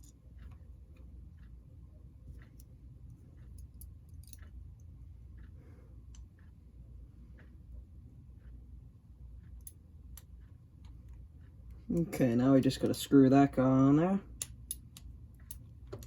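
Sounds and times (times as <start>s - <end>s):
low steady hum: 0.0s - 16.0s
small parts clicking and tapping: 2.2s - 5.5s, 9.4s - 11.8s, 14.3s - 16.0s.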